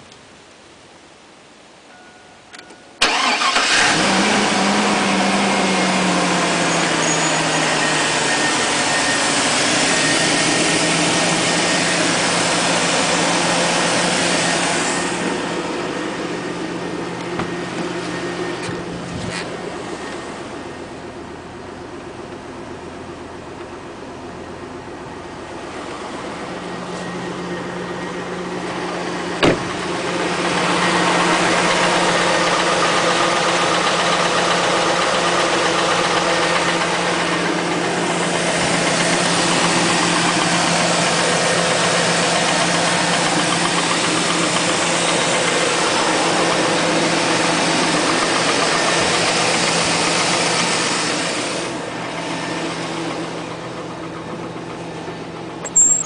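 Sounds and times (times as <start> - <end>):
engine idling with knock: 16.9 - 18.9, 28.6 - 55.6.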